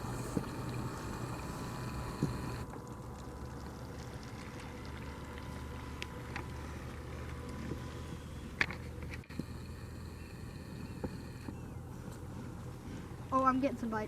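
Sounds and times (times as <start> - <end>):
toy boat motor humming: 0.0 - 2.7, 5.4 - 13.5.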